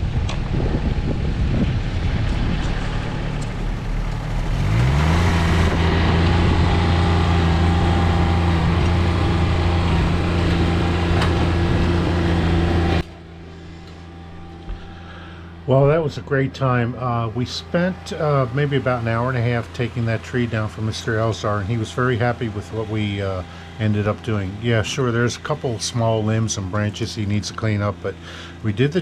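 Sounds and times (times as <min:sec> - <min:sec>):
wind buffeting microphone: 0:00.0 - 0:13.0
tractor diesel engine running: 0:00.0 - 0:29.0.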